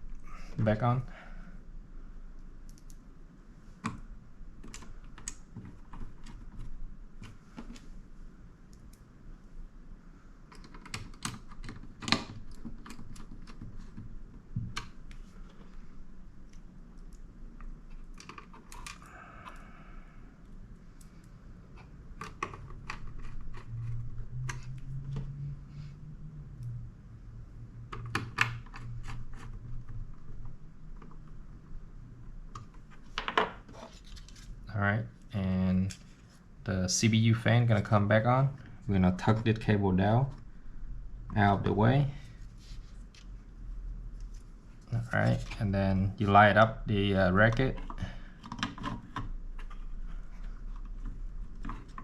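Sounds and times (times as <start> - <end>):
low steady hum: 0.0 - 52.0
computer parts clicking and tapping: 10.5 - 15.1, 17.0 - 19.6.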